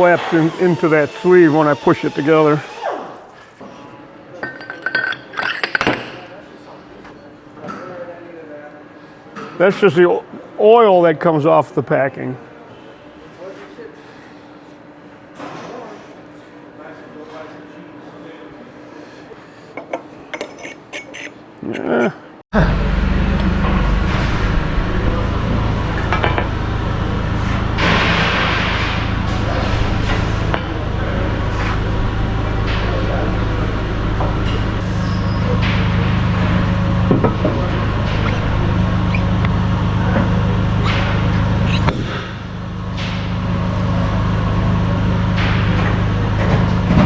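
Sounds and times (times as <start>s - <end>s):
machinery hum: 0.0s - 15.4s, 16.1s - 47.0s
metal parts scraping and sliding: 4.4s - 6.2s, 19.8s - 21.4s.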